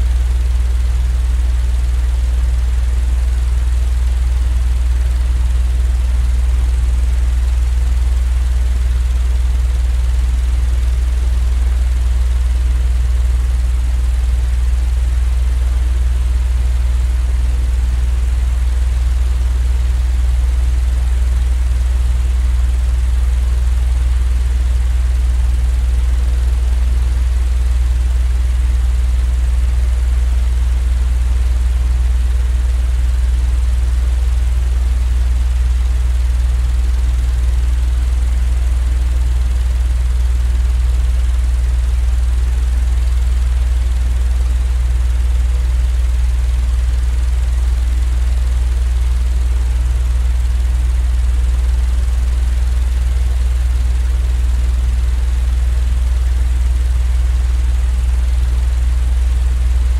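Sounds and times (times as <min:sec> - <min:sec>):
low mechanical hum: 0:00.0 - 0:32.4, 0:50.4 - 0:53.4.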